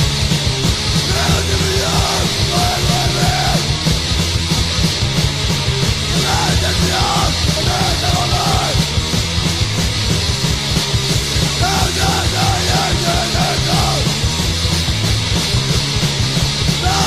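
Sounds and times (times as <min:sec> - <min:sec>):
distorted guitar: 0:00.0 - 0:17.0
fast drums: 0:00.0 - 0:17.0
shouted vocals: 0:01.1 - 0:03.7, 0:06.1 - 0:08.8, 0:11.6 - 0:14.1, 0:16.8 - 0:17.0.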